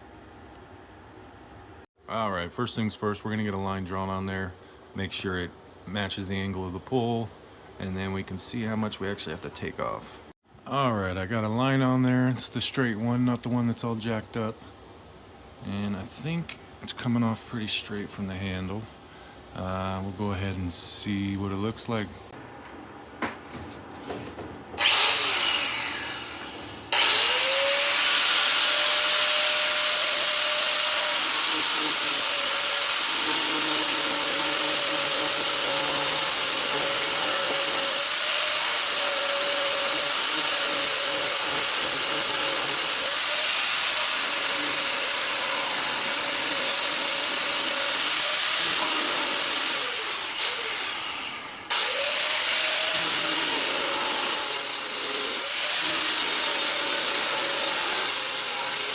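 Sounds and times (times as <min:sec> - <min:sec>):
power tool cutting wood: 0:24.8 - 0:58.9.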